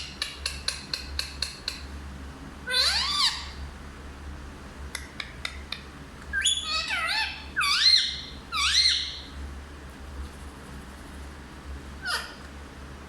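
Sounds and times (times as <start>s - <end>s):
parrot clicks: 0.1s - 1.9s, 4.9s - 5.9s
parrot calling: 2.6s - 3.6s, 5.0s - 9.4s, 12.0s - 12.5s.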